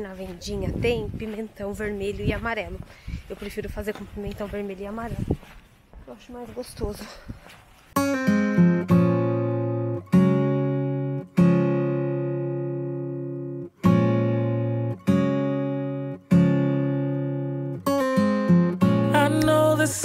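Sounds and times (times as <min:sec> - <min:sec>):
acoustic guitar strumming chords: 0:08.0 - 0:20.0.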